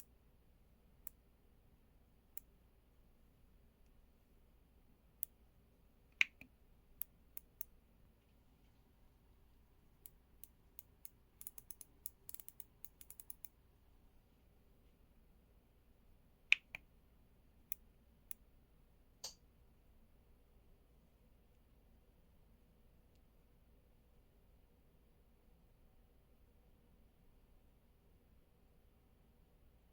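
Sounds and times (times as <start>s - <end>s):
mechanical keyboard typing: 11.4s - 13.5s.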